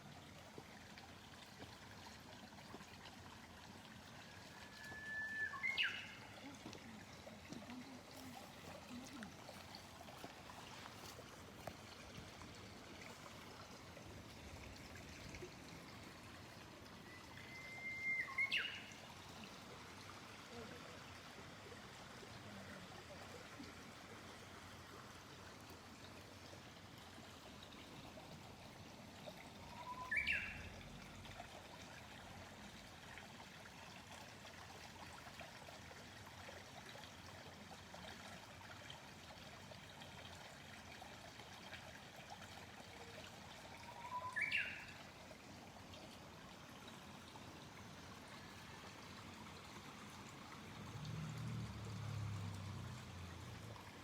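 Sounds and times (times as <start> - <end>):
small stream trickling: 0.0 - 54.0
cuckoo calling: 4.7 - 6.3, 17.1 - 18.8.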